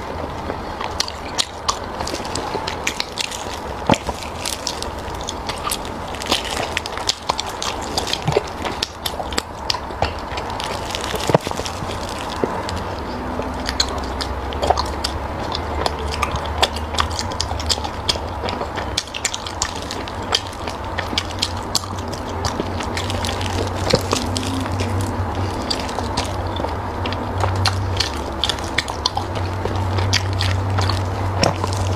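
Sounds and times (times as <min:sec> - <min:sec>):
steady low hum: 0:00.0 - 0:31.9
wet chewing mouth sounds: 0:00.0 - 0:31.9.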